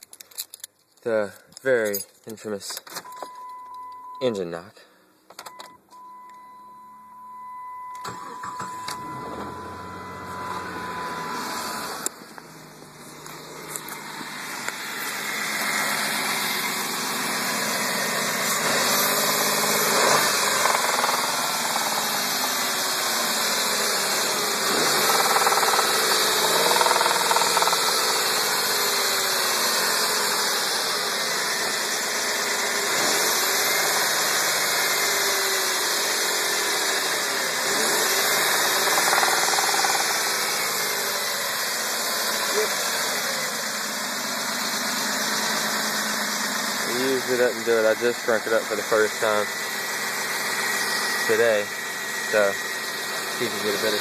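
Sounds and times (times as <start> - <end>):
steady tone: 6.6 - 16.6
car engine cranking and starting: 7.2 - 54.0
engine idling with knock: 11.7 - 22.6, 24.1 - 28.8, 38.1 - 40.8.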